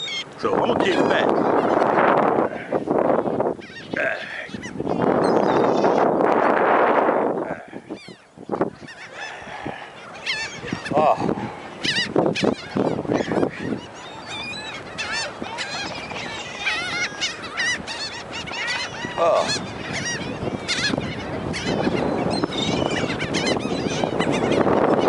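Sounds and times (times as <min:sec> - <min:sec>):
seagulls calling: 0:00.0 - 0:25.0.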